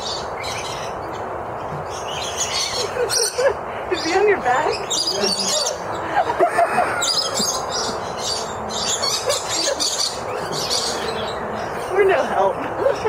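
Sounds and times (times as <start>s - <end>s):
background bird chatter: 0.0s - 13.0s
birds chirping and screeching: 0.0s - 13.0s
shrill bird calls: 6.9s - 12.0s.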